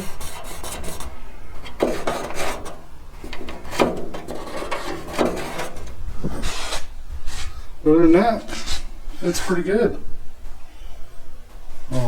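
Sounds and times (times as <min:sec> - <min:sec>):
scraping on sheet metal: 0:00.0 - 0:07.4.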